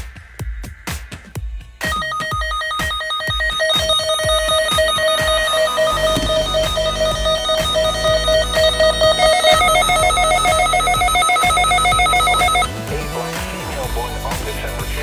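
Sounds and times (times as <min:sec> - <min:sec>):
low steady beat: 0:00.0 - 0:15.0
electronic beeping melody: 0:01.8 - 0:12.8
higher beeping line: 0:01.8 - 0:12.8.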